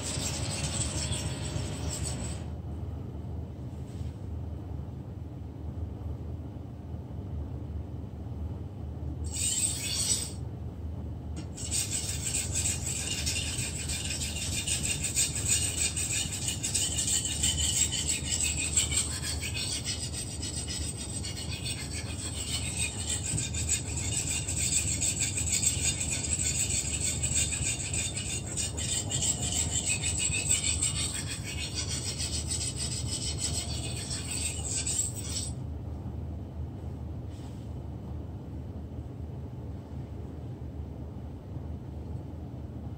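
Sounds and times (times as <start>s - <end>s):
knife scraping on whetstone: 0.0s - 2.4s, 9.3s - 10.4s, 11.4s - 35.6s.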